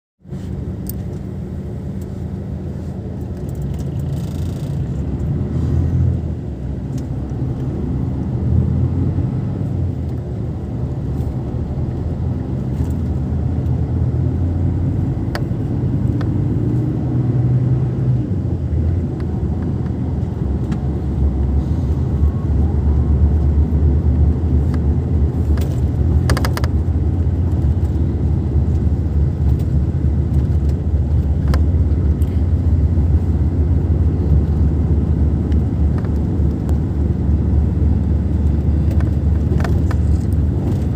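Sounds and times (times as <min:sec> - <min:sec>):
low engine rumble: 0:00.2 - 0:40.9.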